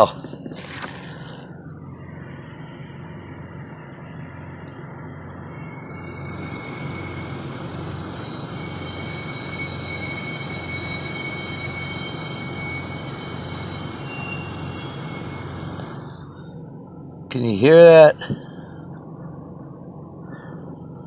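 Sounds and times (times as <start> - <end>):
low droning rumble: 0.0 - 9.9, 18.2 - 21.0.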